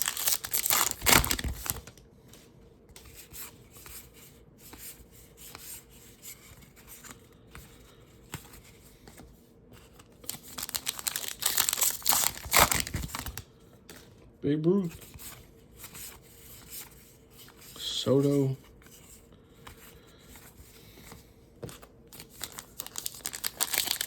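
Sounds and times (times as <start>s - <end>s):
wrapper tearing and crinkling: 0.0s - 1.9s, 10.2s - 13.4s, 22.2s - 24.0s.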